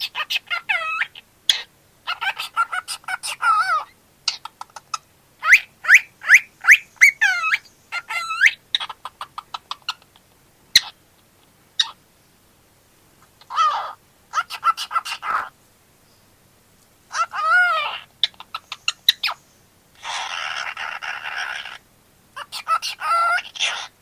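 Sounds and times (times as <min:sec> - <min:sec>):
bird clicking calls: 0:04.3 - 0:07.7, 0:08.4 - 0:11.0, 0:18.2 - 0:19.4
cockatiel chirping and whistling: 0:05.4 - 0:08.6.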